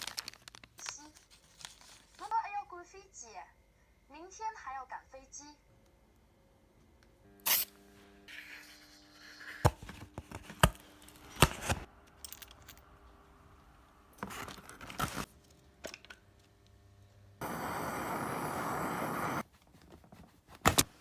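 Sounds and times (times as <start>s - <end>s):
steady hiss: 17.4s - 19.4s.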